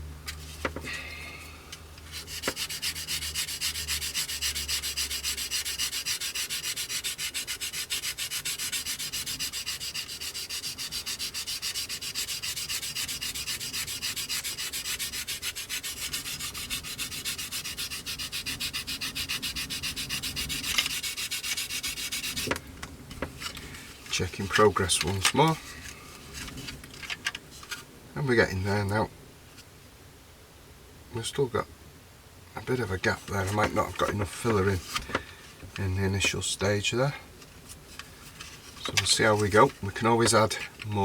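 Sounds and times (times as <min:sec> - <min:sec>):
sanding sponge rubbing on plastic: 0:02.1 - 0:22.6, 0:32.7 - 0:35.0, 0:38.3 - 0:41.0.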